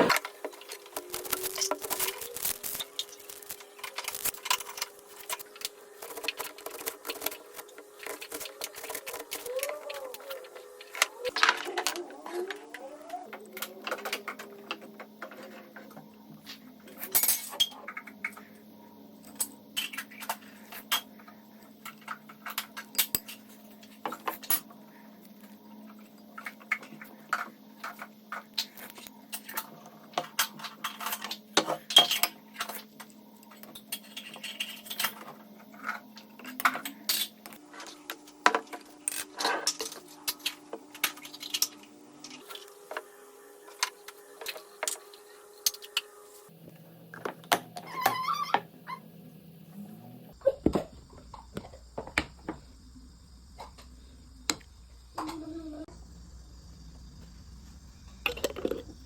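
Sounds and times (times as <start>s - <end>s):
faint steady hum: 39.8s - 59.0s.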